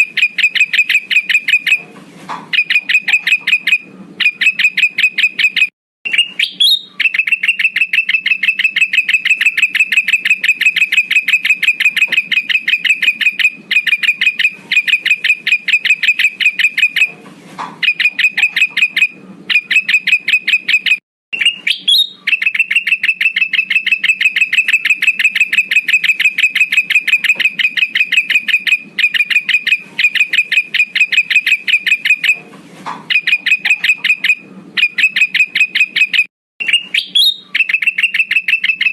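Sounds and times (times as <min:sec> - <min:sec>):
bird trilling high chirps: 0:00.0 - 0:01.8, 0:02.5 - 0:17.2, 0:17.8 - 0:32.4, 0:33.1 - 0:38.9.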